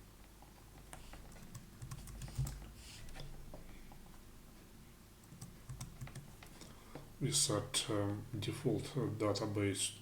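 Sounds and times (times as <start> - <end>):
typing on a keyboard: 0.9 - 2.6, 5.2 - 6.5.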